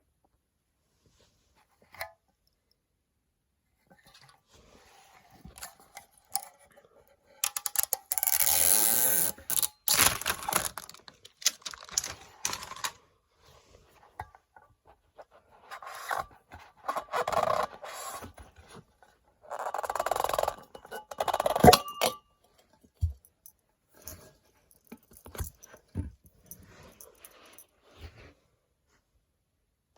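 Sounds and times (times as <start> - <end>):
small clicks and knocks: 7.4 - 8.6
packaging rustling and tearing: 9.2 - 13.0.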